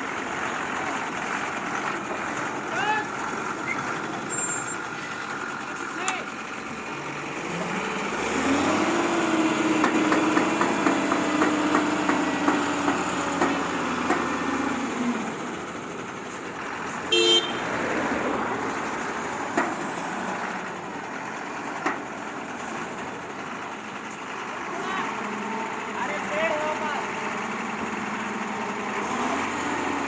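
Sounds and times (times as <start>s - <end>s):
construction vehicle engine: 0.0s - 30.0s
vehicle horn toot: 17.1s - 17.7s.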